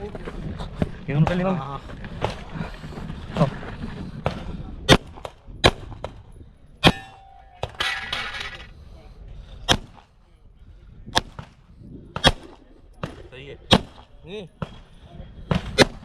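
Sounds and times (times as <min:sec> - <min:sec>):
metallic ring: 0:06.8 - 0:08.7.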